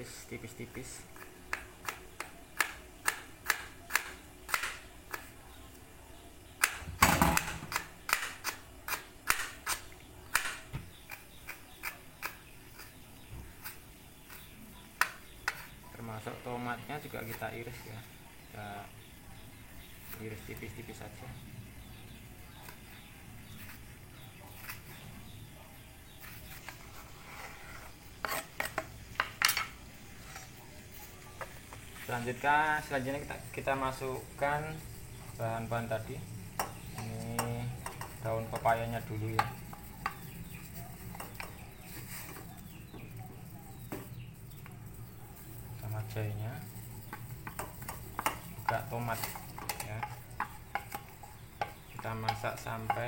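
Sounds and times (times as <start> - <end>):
knife slicing a tomato: 1.1 - 5.4, 7.4 - 15.8, 22.6 - 25.4.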